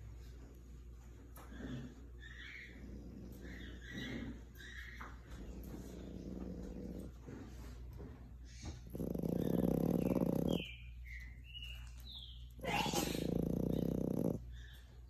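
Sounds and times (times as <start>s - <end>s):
puppy snoring: 1.4s - 11.2s, 12.5s - 14.7s.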